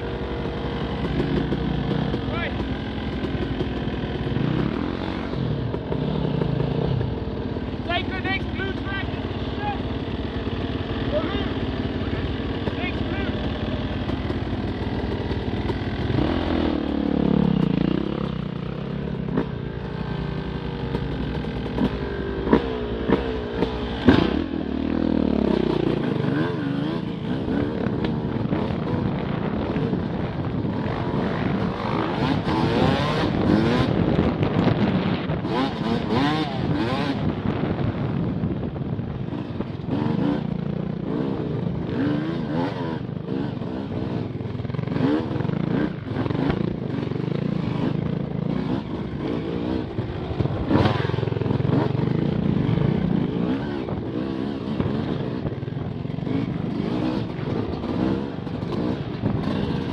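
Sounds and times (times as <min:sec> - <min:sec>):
off-road motorcycle engines revving: 0:00.0 - 0:59.9
sharp knocks from motorcycles: 0:20.8 - 0:24.5, 0:46.0 - 0:46.8.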